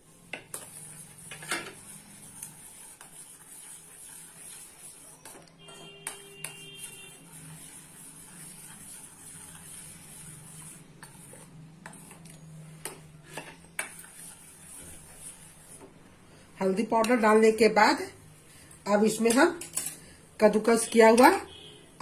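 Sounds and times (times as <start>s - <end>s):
spoon stirring milk in pot: 0.0s - 16.1s, 16.7s - 18.0s.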